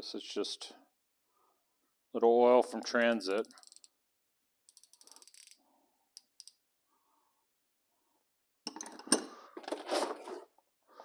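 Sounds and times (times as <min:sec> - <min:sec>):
tools clinking and rattling: 0:02.8 - 0:03.9, 0:08.7 - 0:10.4
ratcheting wrench clicking: 0:02.8 - 0:04.0, 0:04.7 - 0:05.6, 0:06.2 - 0:06.6.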